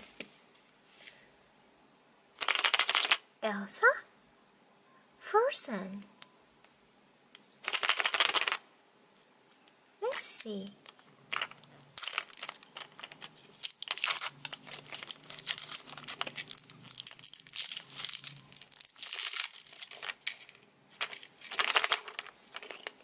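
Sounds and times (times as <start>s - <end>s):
wrapper crinkling and tearing: 7.6s - 8.6s, 11.3s - 23.0s.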